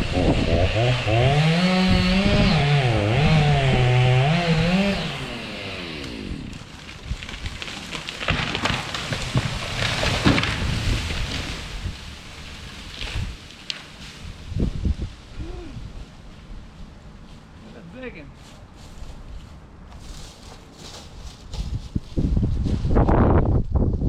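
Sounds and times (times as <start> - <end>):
chainsaw cutting wood: 0.0 - 14.0
crackling and rustling: 6.5 - 14.8, 15.9 - 23.2.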